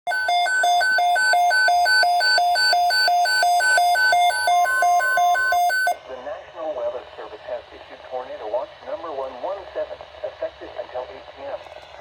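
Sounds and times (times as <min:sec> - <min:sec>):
alternating low and high beeps: 0:00.1 - 0:06.0.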